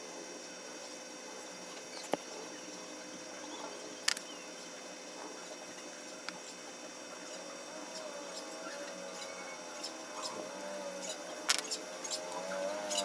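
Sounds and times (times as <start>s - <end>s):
clicks from handling parts: 11.5s - 12.4s.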